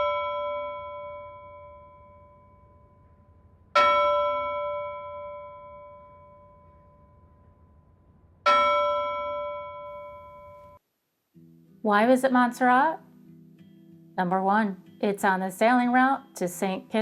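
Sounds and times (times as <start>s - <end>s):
bell ringing: 0.0s - 10.8s.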